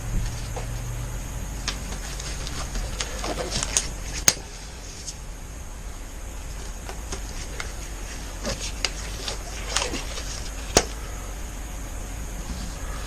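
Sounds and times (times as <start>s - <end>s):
gloves rustling: 1.6s - 5.3s, 6.4s - 11.2s.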